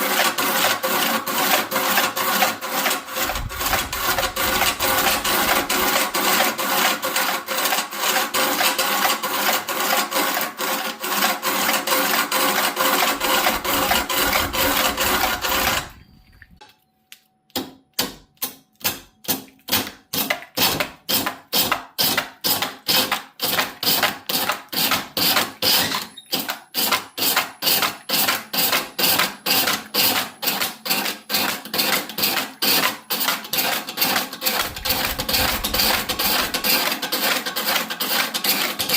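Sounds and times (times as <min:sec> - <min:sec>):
hand tool sawing wood: 0:00.0 - 0:16.0, 0:19.7 - 0:25.8, 0:26.8 - 0:38.9.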